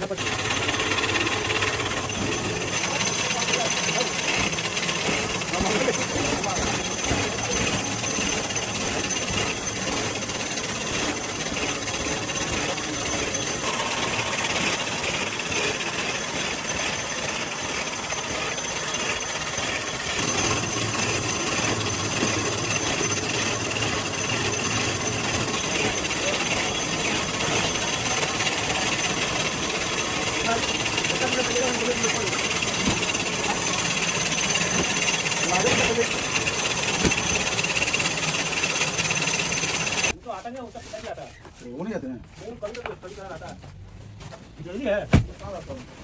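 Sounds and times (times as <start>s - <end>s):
factory machinery running: 0.0s - 40.2s
high-pitched machine whines: 0.0s - 40.2s.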